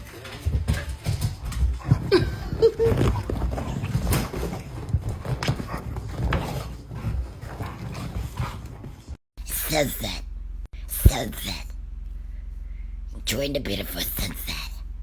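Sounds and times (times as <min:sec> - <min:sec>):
knocks and thumps: 0:00.0 - 0:09.2.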